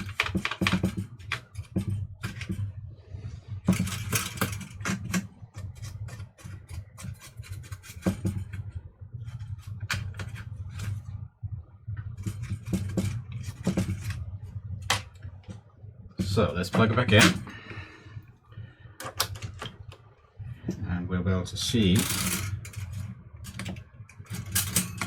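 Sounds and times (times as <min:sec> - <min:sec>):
toaster parts clicking and scraping: 0:00.0 - 0:02.6, 0:03.6 - 0:08.6, 0:21.9 - 0:25.0
steady low hum: 0:00.0 - 0:25.0.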